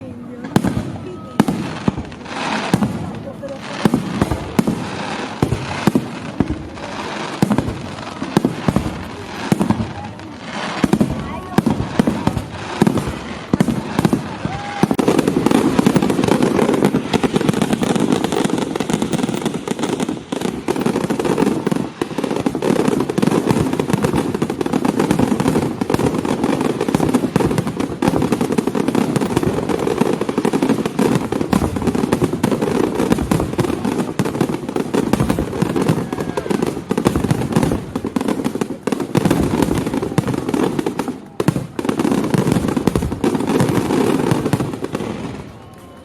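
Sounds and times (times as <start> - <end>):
fireworks bangs and crackles: 0.0 - 46.0.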